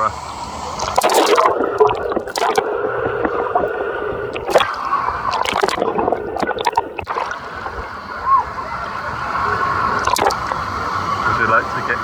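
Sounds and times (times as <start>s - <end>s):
water sloshing and splashing: 0.8s - 7.9s, 10.0s - 10.6s.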